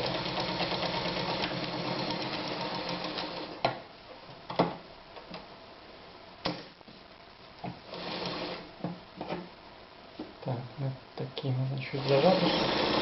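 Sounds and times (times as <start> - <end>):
sewing machine stitching: 0.0 - 3.6, 12.0 - 13.0.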